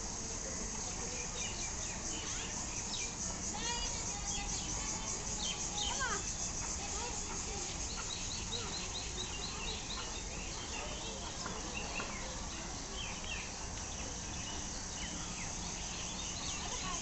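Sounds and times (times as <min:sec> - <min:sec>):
faint voices murmuring: 0:00.0 - 0:17.0
high-pitched insect chorus: 0:00.0 - 0:17.0
birds chirping: 0:00.6 - 0:17.0.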